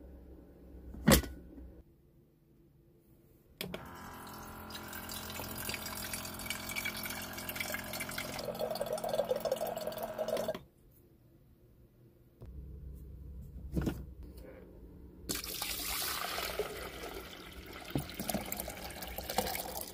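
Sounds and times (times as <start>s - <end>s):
water running: 3.8s - 10.6s, 15.3s - 19.9s.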